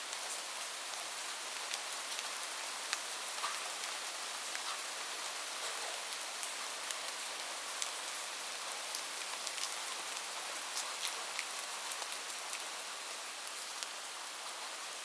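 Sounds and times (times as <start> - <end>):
rain falling: 0.0 - 15.0.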